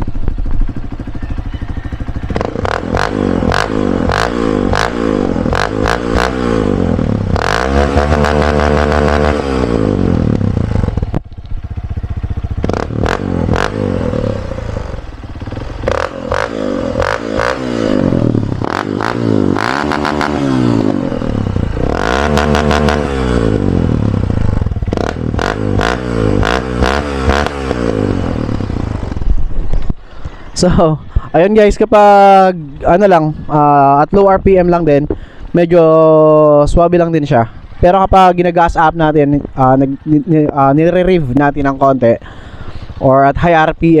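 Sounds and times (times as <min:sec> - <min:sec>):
motorcycle engine revving: 0:00.0 - 0:30.7, 0:37.4 - 0:43.2
exhaust pops and crackles: 0:10.3 - 0:13.7.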